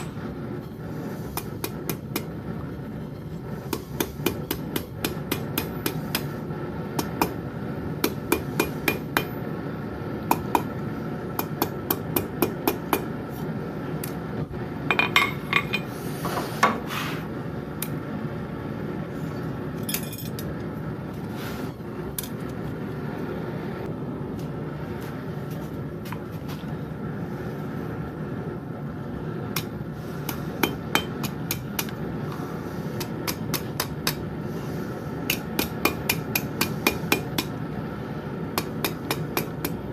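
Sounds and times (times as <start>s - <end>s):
steady background noise: 0.0s - 39.9s
hammer striking metal on anvil: 8.0s - 9.3s, 30.3s - 31.9s, 33.0s - 34.2s, 35.3s - 37.5s, 38.6s - 39.8s.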